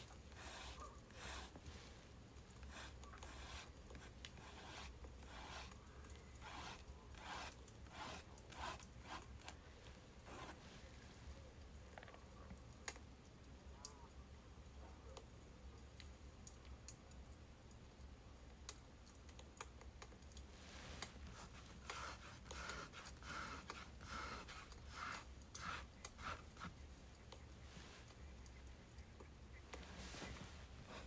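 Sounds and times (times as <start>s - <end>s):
soft scratchy strokes: 0.0s - 11.5s, 20.5s - 31.0s.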